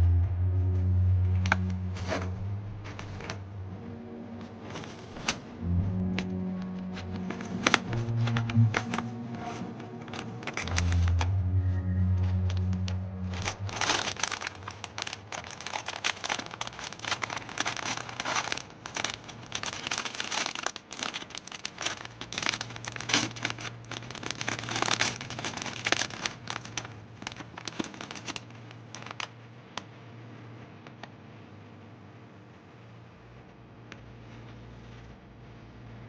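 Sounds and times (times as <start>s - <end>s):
wrapper crinkling and tearing: 6.2s - 29.4s.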